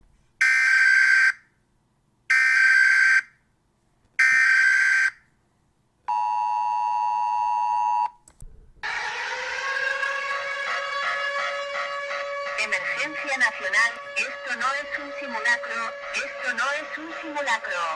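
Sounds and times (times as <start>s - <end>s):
click: 8.2s - 8.5s
buzzy data bursts: 8.8s - 17.9s
pulsing electronic alarm tone: 8.8s - 17.9s.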